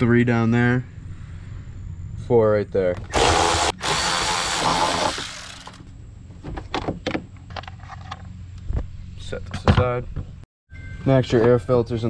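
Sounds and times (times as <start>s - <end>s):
power tool whirring: 3.0s - 5.9s.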